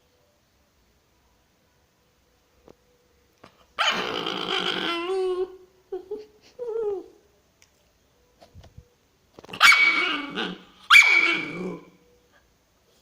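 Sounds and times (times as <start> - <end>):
dog whining: 3.7 - 7.2, 9.5 - 12.0
harsh dog barks: 9.5 - 11.9.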